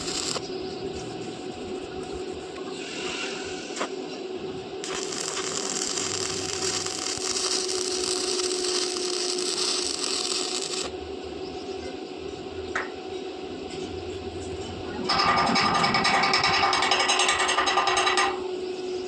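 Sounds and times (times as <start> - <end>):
welding arc crackling and sizzling: 0.0 - 0.5, 4.8 - 10.9.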